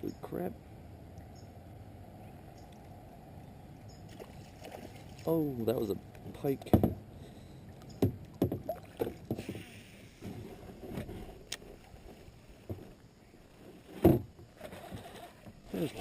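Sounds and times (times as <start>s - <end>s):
fishing gear knocking in a boat: 6.6s - 7.0s, 8.0s - 9.6s.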